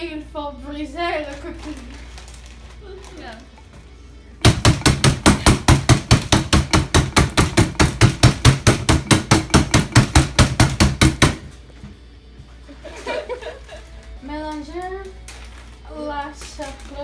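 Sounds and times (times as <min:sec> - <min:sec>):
rapid pounding crushing cookies: 0:04.4 - 0:11.6.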